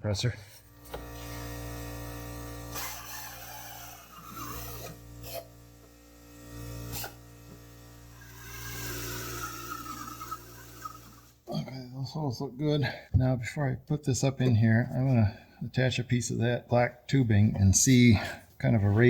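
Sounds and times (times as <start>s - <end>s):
pneumatic drill whining: 0.4s - 11.5s.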